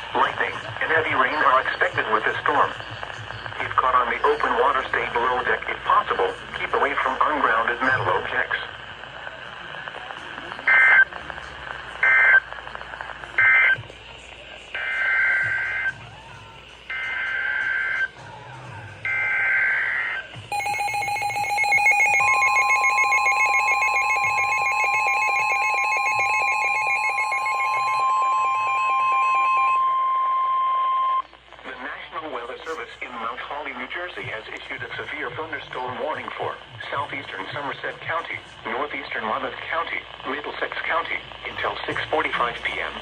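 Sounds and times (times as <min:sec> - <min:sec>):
alert data bursts: 0:14.8 - 0:16.0, 0:16.9 - 0:18.2, 0:19.1 - 0:31.4
pulsing buzzing alarm: 0:19.1 - 0:31.2.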